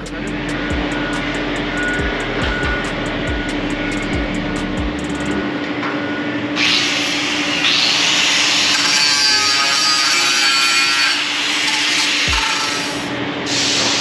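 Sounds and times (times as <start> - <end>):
power tool cutting metal: 6.6 - 14.0.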